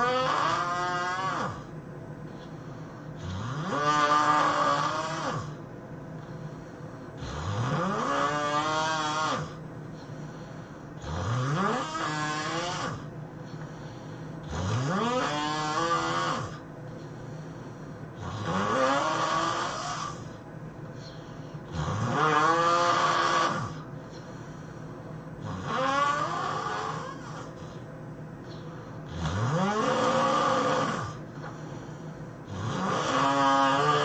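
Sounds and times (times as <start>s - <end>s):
person snoring: 0.0s - 1.7s, 3.1s - 5.6s, 7.1s - 9.6s, 10.3s - 13.1s, 13.8s - 16.7s, 17.3s - 20.4s, 21.0s - 23.9s, 25.4s - 27.8s, 28.8s - 34.0s
quiet breathing: 1.6s - 3.6s, 5.4s - 8.0s, 9.4s - 11.6s, 13.0s - 14.9s, 16.4s - 18.8s, 19.6s - 22.0s, 23.5s - 25.6s, 26.8s - 29.5s, 30.8s - 32.7s.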